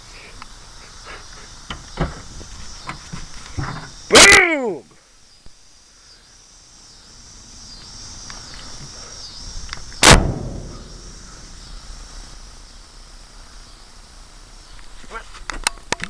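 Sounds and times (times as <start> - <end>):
insects chirping: 0.0 - 16.0
loud sharp bang with rumble: 10.0 - 11.8.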